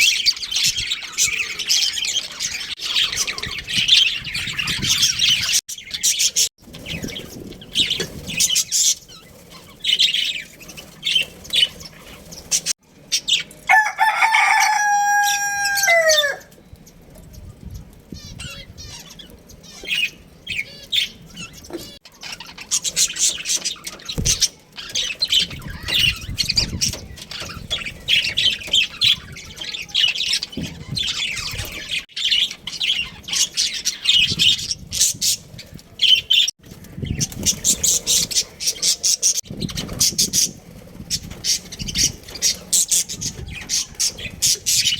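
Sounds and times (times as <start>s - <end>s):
rooster crowing: 13.7s - 16.5s.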